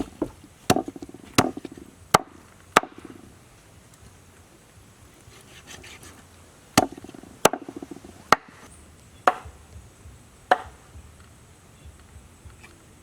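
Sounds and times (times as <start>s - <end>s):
heavy blade chopping wood: 0.0s - 3.2s, 6.8s - 9.6s, 10.5s - 10.8s.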